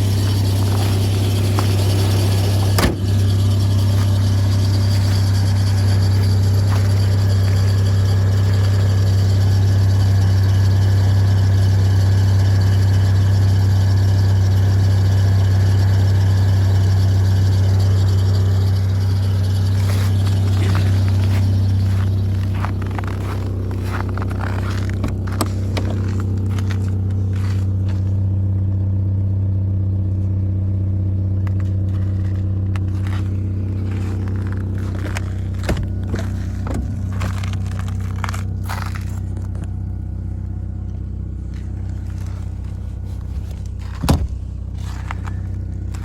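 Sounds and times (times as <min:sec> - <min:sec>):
alternator squeaking and scraping: 0:00.0 - 0:46.0
car engine idling: 0:00.0 - 0:46.0.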